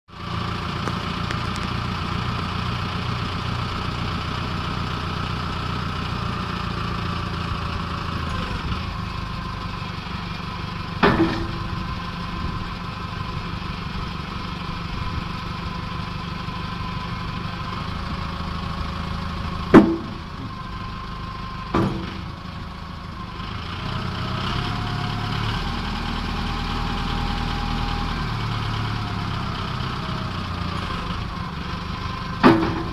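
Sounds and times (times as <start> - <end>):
diesel engine running: 0.1 - 32.9
sharp knocks: 19.7 - 20.2, 32.4 - 32.9.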